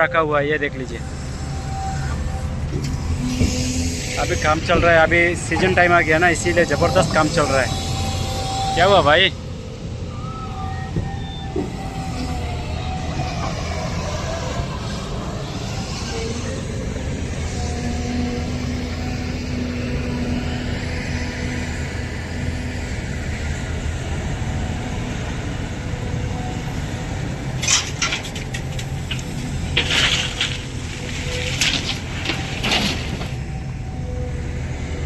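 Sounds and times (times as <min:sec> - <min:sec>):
excavator diesel drone: 0:00.0 - 0:35.0.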